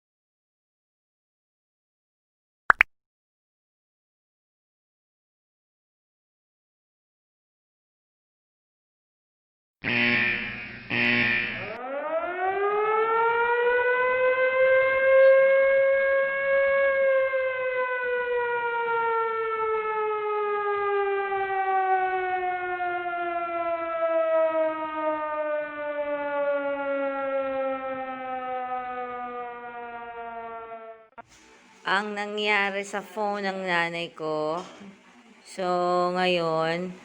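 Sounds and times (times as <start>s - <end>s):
siren winding up and down: 9.8s - 31.1s.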